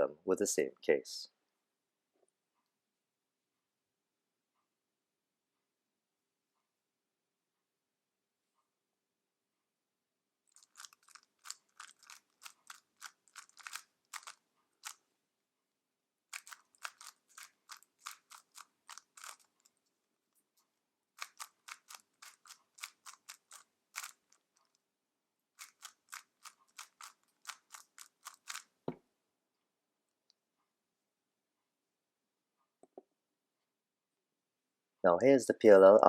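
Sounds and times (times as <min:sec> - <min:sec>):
speed cube clicking: 0:10.5 - 0:15.0, 0:16.3 - 0:19.8, 0:21.2 - 0:24.8, 0:25.6 - 0:28.8.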